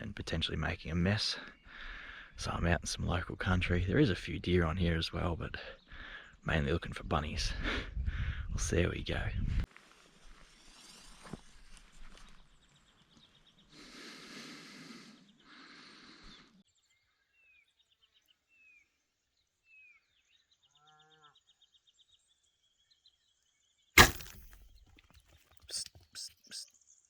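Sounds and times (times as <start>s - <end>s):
faint bird chirps: 25.2s - 27.0s
fast bird trill: 25.7s - 26.7s.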